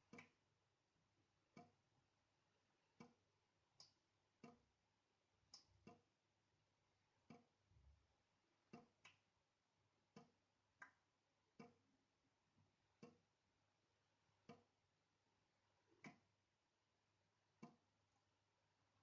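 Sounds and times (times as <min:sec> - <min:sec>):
water dripping into sink: 0:00.0 - 0:00.4, 0:01.5 - 0:01.8, 0:02.9 - 0:03.2, 0:03.8 - 0:04.7, 0:05.4 - 0:06.2, 0:07.2 - 0:08.0, 0:08.6 - 0:09.3, 0:10.0 - 0:11.9, 0:12.6 - 0:13.3, 0:14.4 - 0:14.8, 0:15.9 - 0:16.3, 0:17.5 - 0:17.9.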